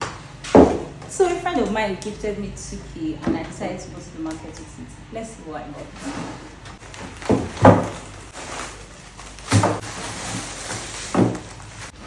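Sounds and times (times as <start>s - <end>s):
bags set down with dull thumps: 9.5s - 10.0s.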